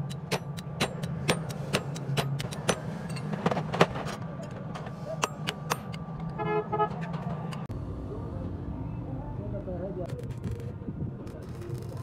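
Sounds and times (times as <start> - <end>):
vehicle horn toots: 6.4 - 7.0.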